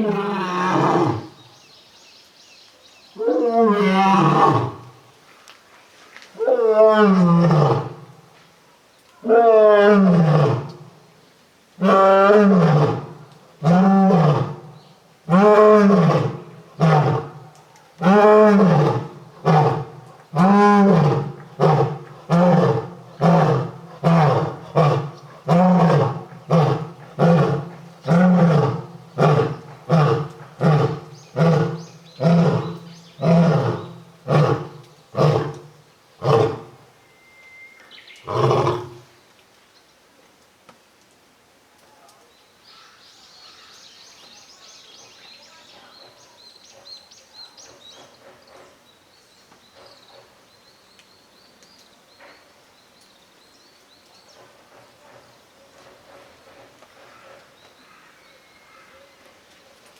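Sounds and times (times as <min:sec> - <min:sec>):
lion roaring: 0:00.0 - 0:01.4, 0:03.2 - 0:05.0, 0:09.2 - 0:10.8, 0:11.8 - 0:14.7, 0:15.3 - 0:17.4, 0:18.0 - 0:36.9, 0:38.2 - 0:39.1
lion grunting roars: 0:18.0 - 0:36.8, 0:38.2 - 0:39.1.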